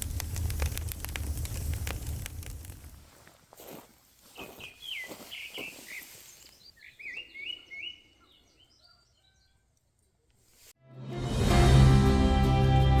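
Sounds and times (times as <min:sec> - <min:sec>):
songbird chirping: 0:03.5 - 0:10.5.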